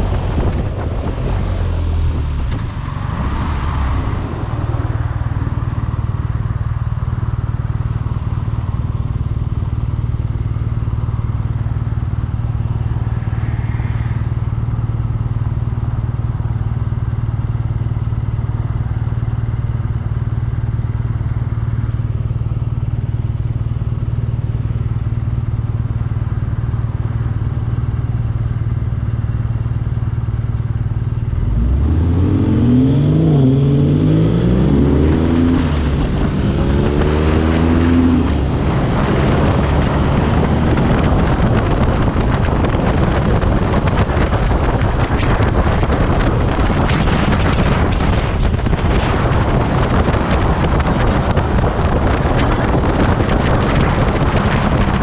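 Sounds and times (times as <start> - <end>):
motorcycle engine revving: 31.2 - 55.0.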